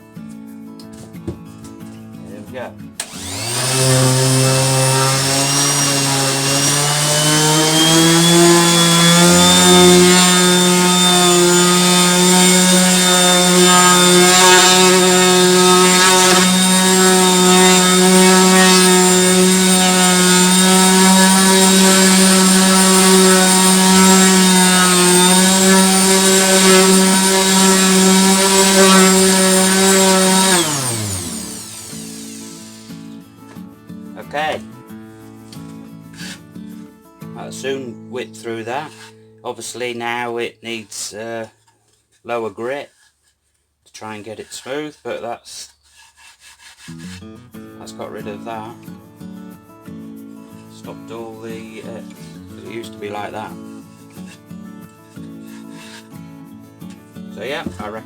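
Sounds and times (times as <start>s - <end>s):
orbital sander motor whine: 3.0s - 33.0s.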